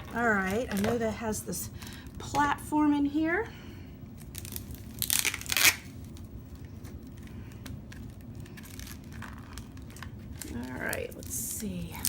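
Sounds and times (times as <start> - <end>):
packaging rustling and tearing: 4.2 - 12.0.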